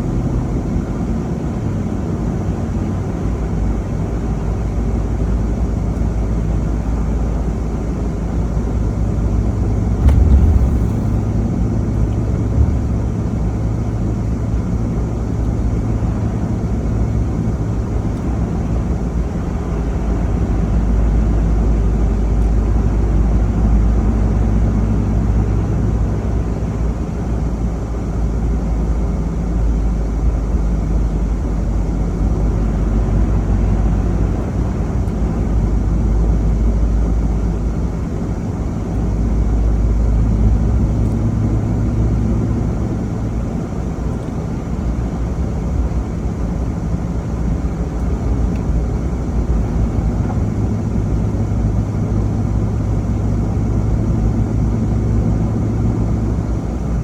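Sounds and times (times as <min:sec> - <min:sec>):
car engine and tyres rumbling: 0:00.0 - 0:57.0
car bump: 0:09.9 - 0:14.0
short knock: 0:10.0 - 0:13.2.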